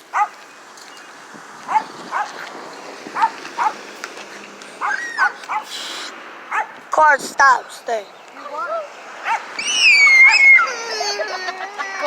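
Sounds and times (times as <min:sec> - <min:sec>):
dog barking in high yips: 0:00.2 - 0:00.4, 0:01.7 - 0:02.4, 0:03.2 - 0:03.8, 0:04.8 - 0:05.7, 0:06.5 - 0:06.8, 0:09.2 - 0:09.5.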